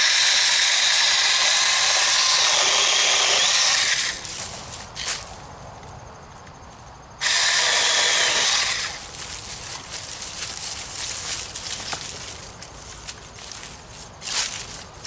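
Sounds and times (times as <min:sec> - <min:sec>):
mini chainsaw running: 0:00.0 - 0:04.3, 0:07.2 - 0:09.1.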